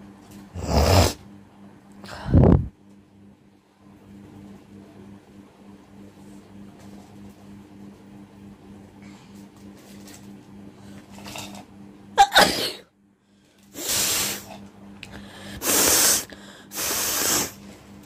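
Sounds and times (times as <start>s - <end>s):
forceful nose blows: 0.6s - 1.2s, 13.8s - 14.5s, 15.6s - 17.6s
person sneezing: 12.2s - 12.9s.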